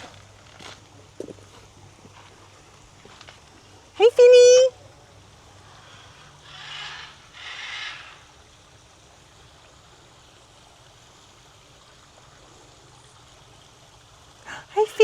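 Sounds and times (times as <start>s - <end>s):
faint rushing background noise: 0.0s - 7.4s.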